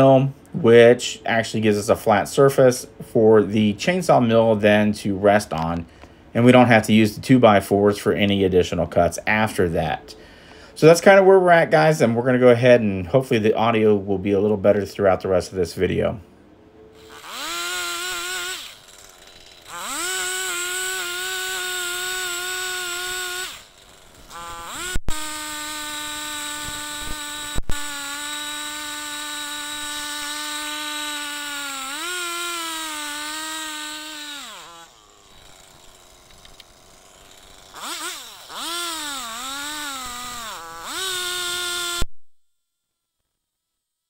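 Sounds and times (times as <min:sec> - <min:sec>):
chainsaw engine revving: 0:17.0 - 0:42.0
sharp clicks: 0:35.7 - 0:36.8.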